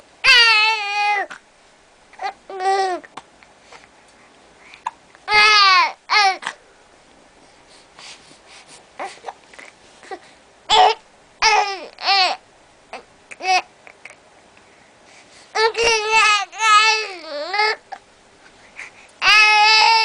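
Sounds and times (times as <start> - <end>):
baby babbling: 2.2 - 3.2, 5.3 - 6.6, 9.0 - 12.4, 13.0 - 14.2, 15.6 - 17.8.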